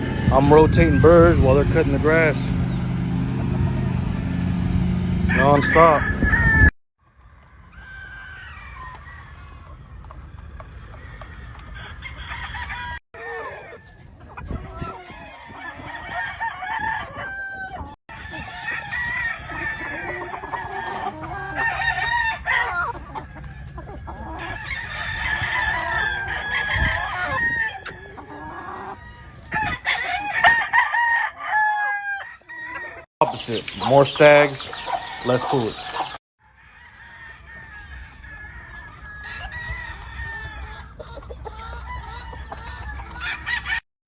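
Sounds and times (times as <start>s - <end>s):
chickens clucking: 0.0s - 4.0s, 19.4s - 21.8s, 22.6s - 24.5s, 32.6s - 36.2s, 37.6s - 43.8s
roosters crowing: 0.0s - 43.8s.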